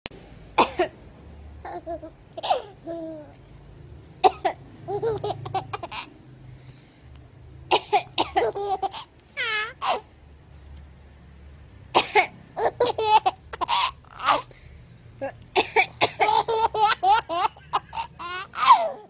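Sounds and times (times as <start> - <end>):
baby laughing and babbling: 1.6 - 3.4, 8.4 - 10.1, 12.6 - 14.5, 16.2 - 19.0.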